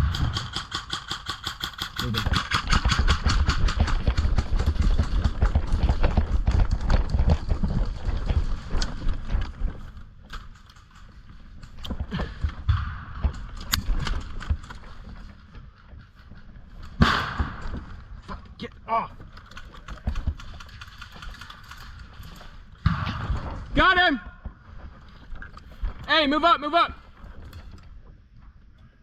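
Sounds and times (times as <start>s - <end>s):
gear rattling: 0.0s - 12.2s, 19.1s - 22.8s
sharp clicks: 19.3s - 22.0s.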